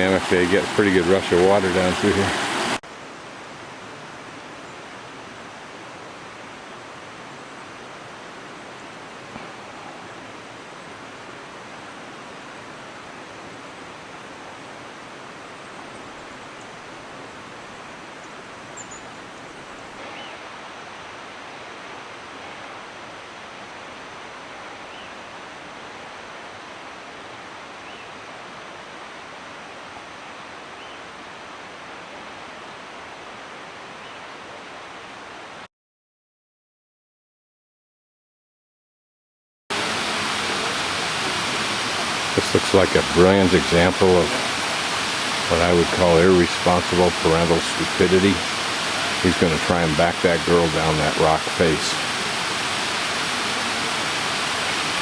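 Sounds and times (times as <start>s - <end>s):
rushing stream water: 0.0s - 35.7s, 39.7s - 55.0s.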